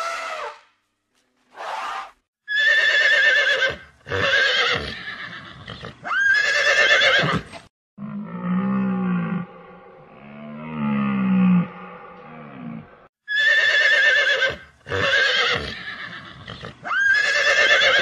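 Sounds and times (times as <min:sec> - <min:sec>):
horse whinnying: 0:01.7 - 0:07.7, 0:13.3 - 0:18.0
low-pitched animal call: 0:08.0 - 0:18.0.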